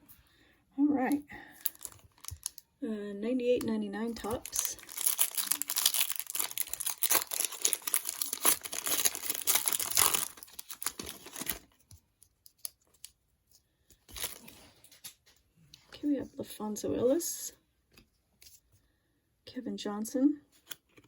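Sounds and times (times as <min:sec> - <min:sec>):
wrapper tearing and crinkling: 0:01.6 - 0:02.6, 0:04.2 - 0:11.8, 0:14.1 - 0:14.6.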